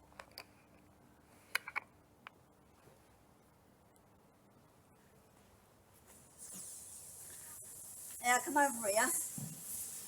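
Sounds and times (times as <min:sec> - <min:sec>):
sparkler fizzing: 0:06.1 - 0:10.0.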